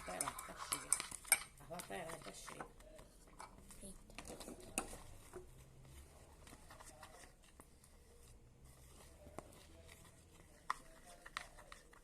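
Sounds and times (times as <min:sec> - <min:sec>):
faint clicks and taps of slime: 0:09.1 - 0:12.0.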